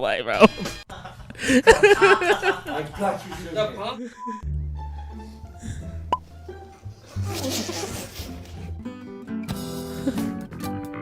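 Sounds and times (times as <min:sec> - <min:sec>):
background music with plucked strings: 0:04.4 - 0:11.0.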